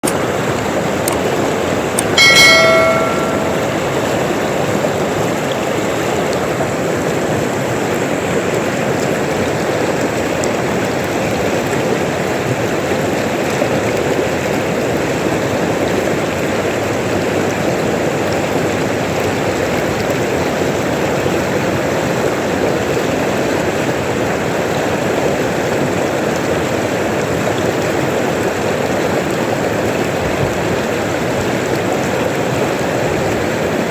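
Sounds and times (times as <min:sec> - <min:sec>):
bell-like chime: 0:02.2 - 0:04.0.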